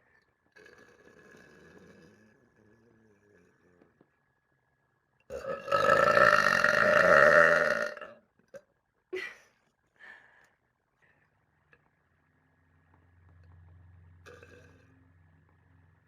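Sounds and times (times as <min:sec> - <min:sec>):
woman burping: 0:05.3 - 0:09.4.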